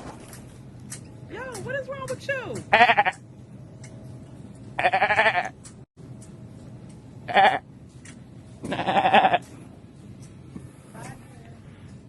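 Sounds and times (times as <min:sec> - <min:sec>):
goat bleating: 0:02.7 - 0:03.2, 0:04.8 - 0:05.6, 0:07.3 - 0:07.6, 0:08.6 - 0:09.5.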